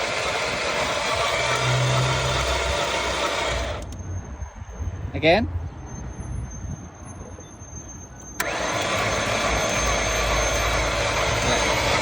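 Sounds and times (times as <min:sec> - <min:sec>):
starter motor cranking car engine: 0:00.0 - 0:04.0, 0:08.4 - 0:12.0.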